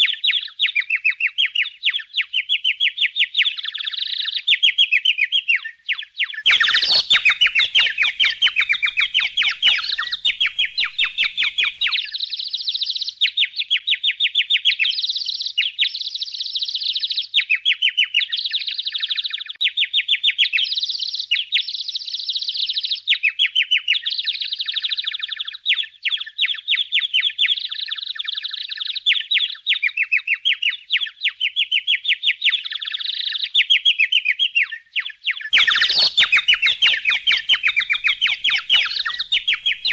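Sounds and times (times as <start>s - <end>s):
budgerigars chattering: 5.6s - 12.3s, 34.1s - 39.9s.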